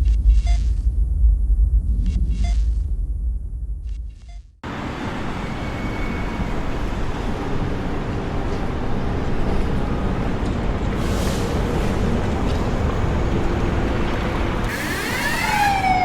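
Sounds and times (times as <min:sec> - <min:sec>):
deep rumble: 0:00.0 - 0:04.4.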